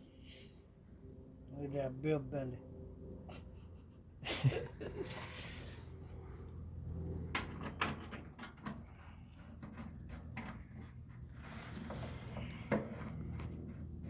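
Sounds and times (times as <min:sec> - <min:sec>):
steady low hum: 0:00.0 - 0:14.0
sharp handling clicks and knocks: 0:07.3 - 0:11.3.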